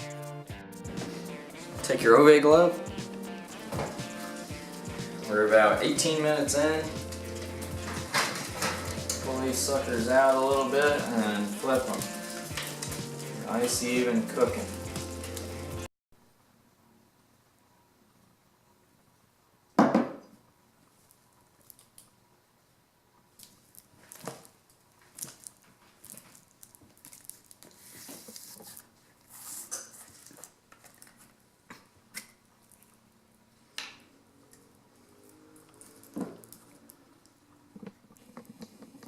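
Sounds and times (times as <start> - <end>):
utensils clicking and tapping: 3.0 - 15.8
scraping rustles of foil: 3.5 - 15.8, 24.0 - 31.3.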